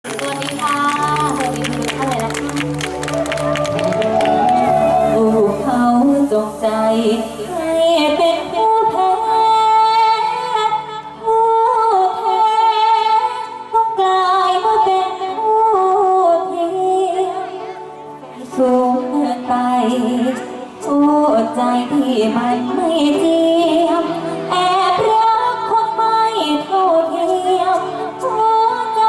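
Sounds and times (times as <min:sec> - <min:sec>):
band accompaniment: 0:00.0 - 0:08.8
woman singing wordless melody: 0:03.7 - 0:29.0.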